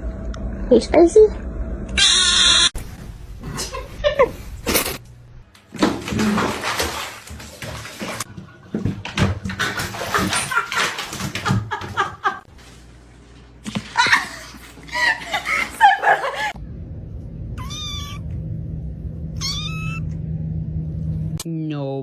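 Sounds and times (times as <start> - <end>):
steady low hum: 0.0 - 5.6, 14.7 - 21.4
cat meowing: 17.6 - 18.3, 19.4 - 20.1.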